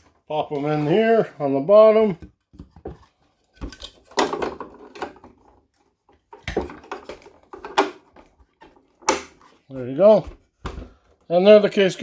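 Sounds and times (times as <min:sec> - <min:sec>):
hard plastic clicks and rattles: 0:06.3 - 0:09.4.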